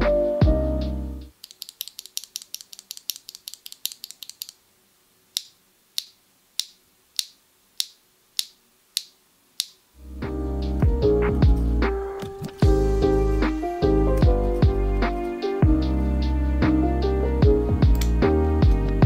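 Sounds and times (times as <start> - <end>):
lofi background music: 0.0 - 1.3, 10.0 - 19.0
mechanical keyboard typing: 1.3 - 4.6.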